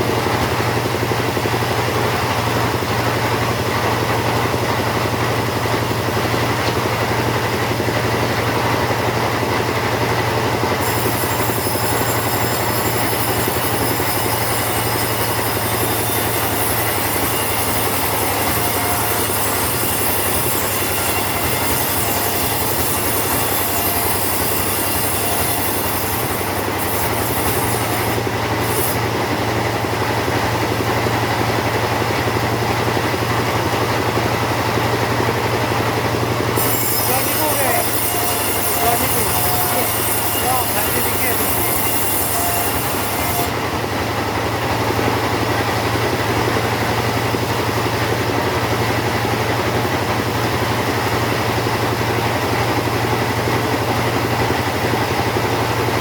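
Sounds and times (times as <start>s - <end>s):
chainsaw ripping wood: 36.4s - 43.6s.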